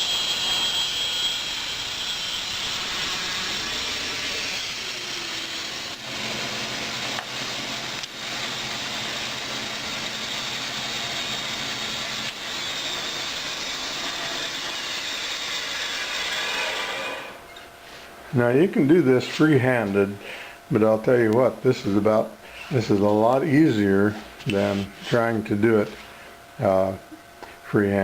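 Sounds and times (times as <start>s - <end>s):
band saw blade cutting wood: 0.0s - 17.4s
motor humming: 0.0s - 17.4s.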